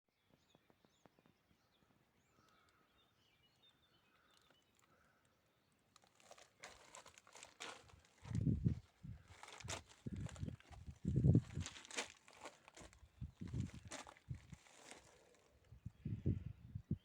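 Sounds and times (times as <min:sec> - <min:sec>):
faint birds chirping: 0:00.1 - 0:17.0
crackling and rustling: 0:05.9 - 0:15.8.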